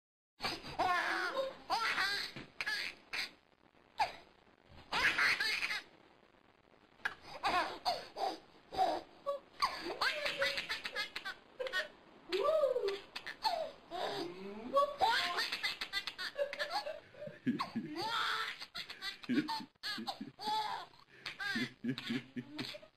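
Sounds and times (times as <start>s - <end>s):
high-pitched laughter: 9.6s - 13.6s, 14.8s - 22.9s.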